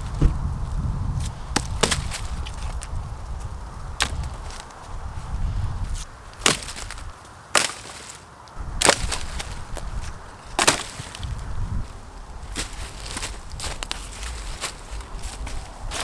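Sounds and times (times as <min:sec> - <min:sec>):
wind rumble on microphone: 0:00.0 - 0:07.2, 0:08.6 - 0:16.0
wood being struck hard: 0:01.6 - 0:02.3.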